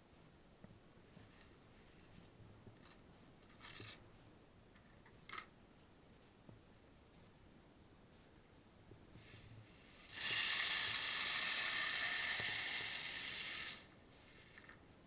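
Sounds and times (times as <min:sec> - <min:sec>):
small motor and gears whirring: 0:09.9 - 0:14.8.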